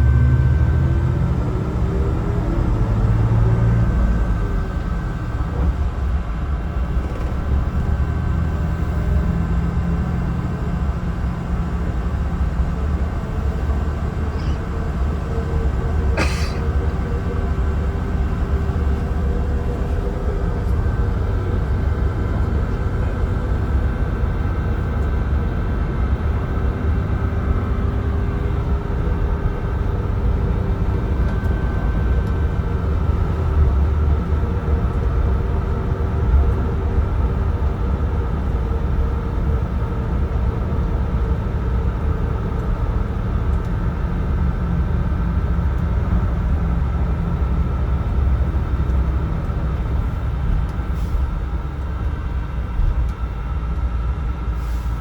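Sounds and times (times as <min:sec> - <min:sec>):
bus engine and road rumble: 0:00.0 - 0:55.0
faint drone: 0:10.2 - 0:43.7.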